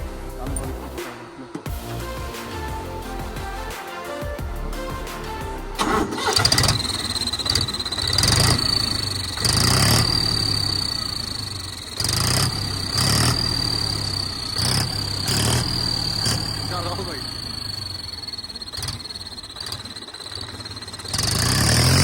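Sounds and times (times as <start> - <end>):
diesel tractor engine running: 5.8 - 22.0.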